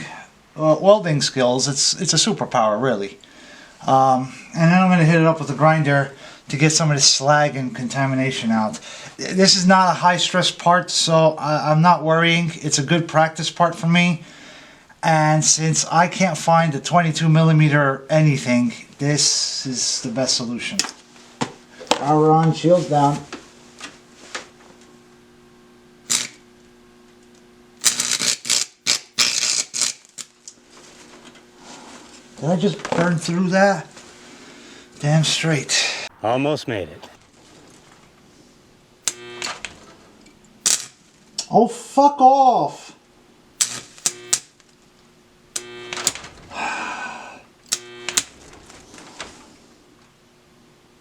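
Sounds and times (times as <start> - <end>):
faint steady hum: 0.0 - 51.0
welding arc crackling: 25.8 - 33.4, 39.0 - 41.5, 43.5 - 49.4
welding rod tapping metal: 26.0 - 26.5, 27.8 - 30.6, 39.0 - 41.0, 43.6 - 44.7, 45.6 - 46.2, 47.6 - 48.6.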